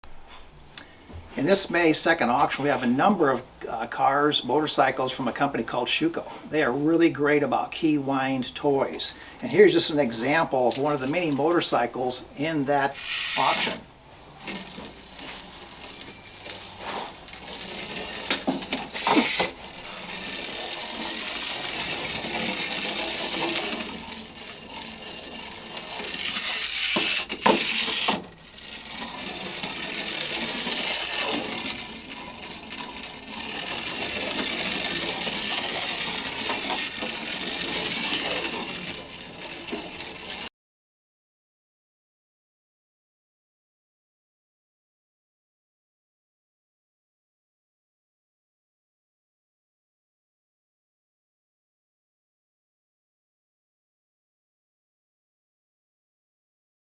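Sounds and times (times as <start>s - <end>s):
clockwork toy motor whirring: 10.6s - 11.7s, 12.8s - 40.5s.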